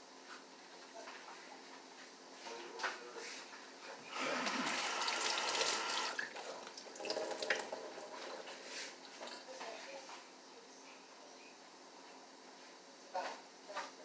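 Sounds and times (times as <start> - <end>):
liquid running or splashing: 4.1 - 9.3.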